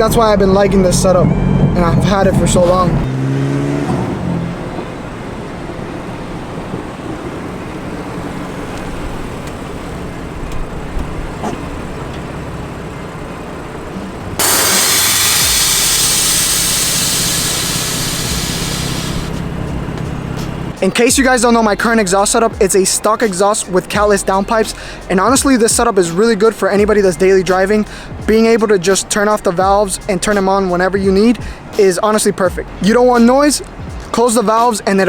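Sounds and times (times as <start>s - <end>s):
car engine running while driving: 0.0s - 34.6s
loud rushing noise: 14.4s - 20.8s.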